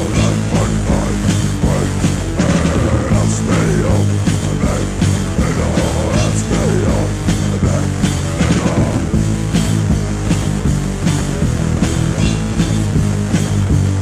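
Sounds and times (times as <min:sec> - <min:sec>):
bass guitar: 0:00.0 - 0:14.0
distorted electric guitars: 0:00.0 - 0:14.0
drums playing: 0:00.0 - 0:14.0.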